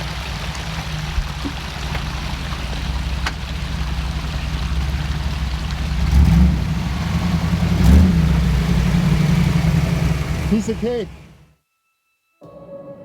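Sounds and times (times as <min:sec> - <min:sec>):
off-road vehicle engine revving: 0:00.0 - 0:11.5.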